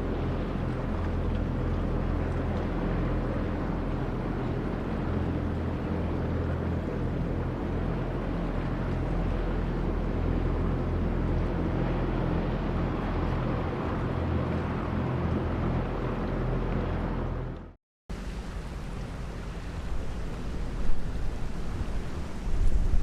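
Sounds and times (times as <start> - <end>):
barge engine droning: 0.0 - 23.0
wind: 0.0 - 23.0
water rushing: 18.1 - 23.0.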